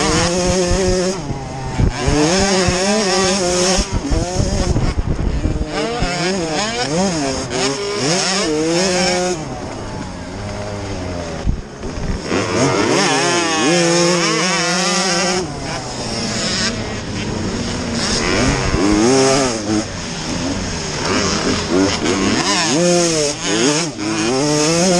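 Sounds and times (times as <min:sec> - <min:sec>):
dirt bike engines revving: 0:00.0 - 0:24.9.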